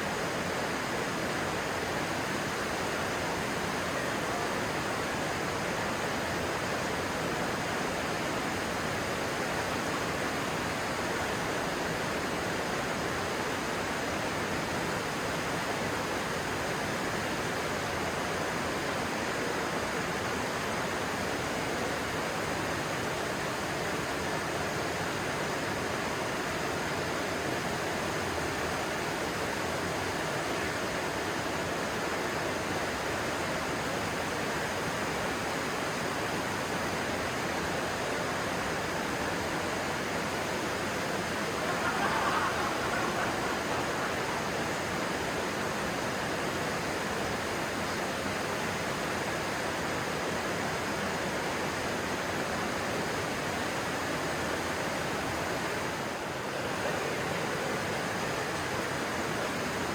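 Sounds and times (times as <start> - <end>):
water rushing over rocks: 34.0 - 59.9.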